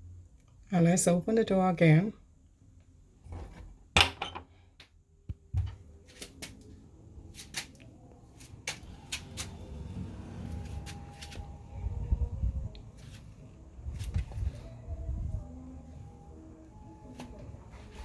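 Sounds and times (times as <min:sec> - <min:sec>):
low steady rumble: 0:08.0 - 0:17.0.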